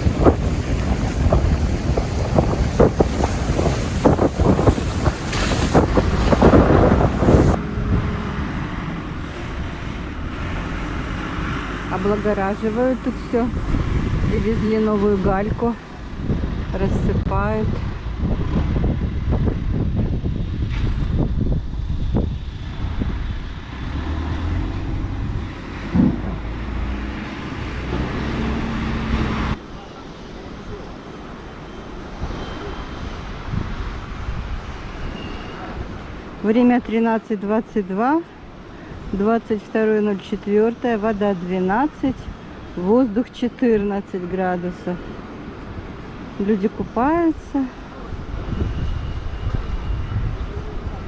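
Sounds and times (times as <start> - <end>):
sea surf: 0.0 - 7.6
dull steady rumble: 0.0 - 29.6
wind gusting on microphone: 0.0 - 51.0
knocks: 25.8 - 26.5.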